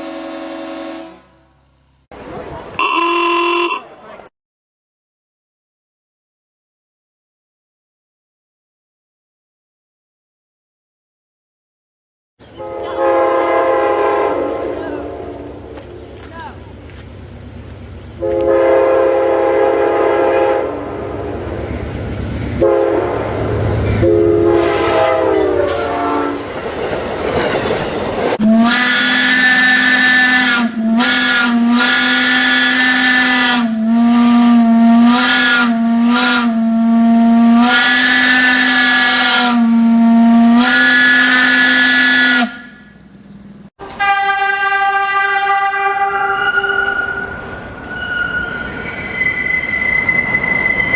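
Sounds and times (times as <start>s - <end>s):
higher horn: 0.0s - 1.6s, 2.8s - 4.0s, 12.6s - 15.6s, 18.2s - 21.0s, 22.6s - 23.4s, 24.0s - 26.4s, 28.4s - 42.9s, 43.8s - 47.3s
multi-note chord horn: 0.0s - 1.6s, 2.8s - 3.8s
deep horn blasts: 0.0s - 1.7s, 2.8s - 3.8s, 12.6s - 15.6s, 18.2s - 21.0s, 22.6s - 26.4s, 28.4s - 43.0s, 43.8s - 46.9s.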